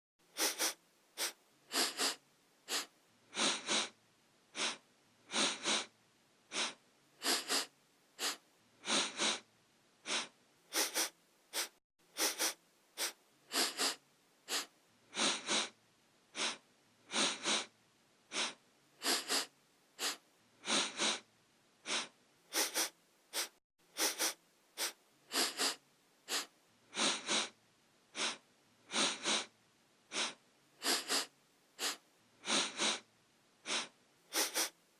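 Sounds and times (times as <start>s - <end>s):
person sniffing: 0.3s - 5.9s, 6.5s - 17.7s, 18.3s - 34.8s.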